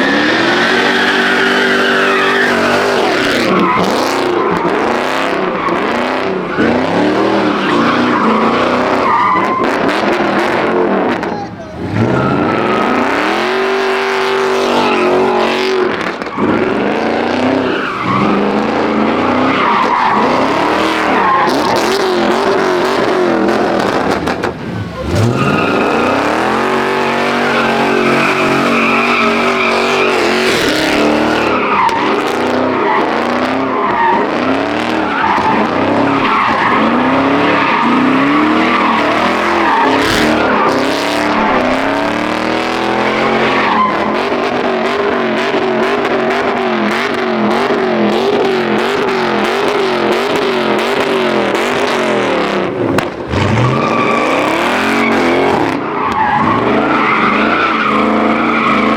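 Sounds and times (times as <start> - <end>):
tyre squeal: 0.0 - 5.0, 17.5 - 44.4, 53.3 - 58.9
car engine revving: 0.0 - 58.9.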